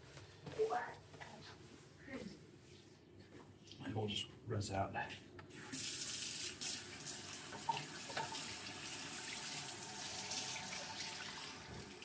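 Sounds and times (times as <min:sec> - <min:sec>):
tap water running into sink: 0:05.7 - 0:12.0.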